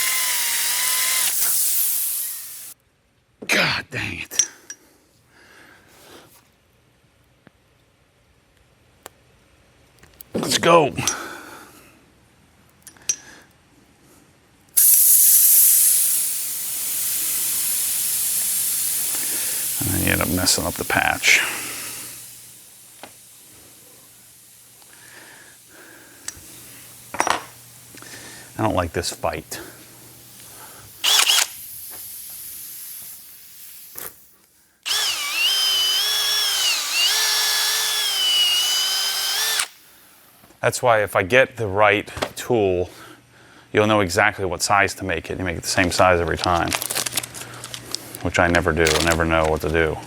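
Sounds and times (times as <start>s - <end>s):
compressed air hissing: 0.0s - 2.8s, 14.8s - 40.4s
power drill whining: 0.0s - 2.8s, 30.9s - 31.6s, 34.8s - 40.3s.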